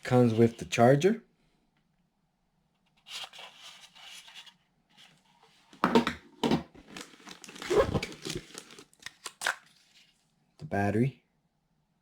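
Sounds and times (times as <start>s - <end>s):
items knocking when set down: 5.8s - 7.0s
plastic packaging crinkling: 6.8s - 10.2s.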